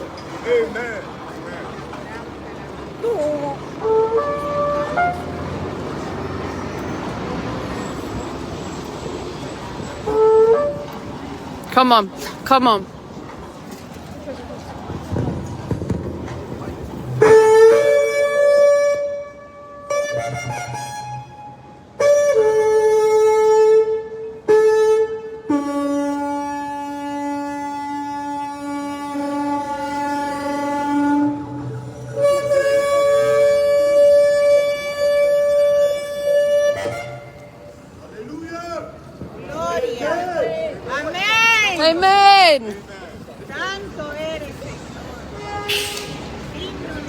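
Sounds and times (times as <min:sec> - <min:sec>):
low engine rumble: 0:00.0 - 0:11.6
road traffic noise: 0:00.0 - 0:47.0
ram's horn blasts: 0:03.7 - 0:05.9, 0:22.0 - 0:37.8, 0:45.2 - 0:46.8.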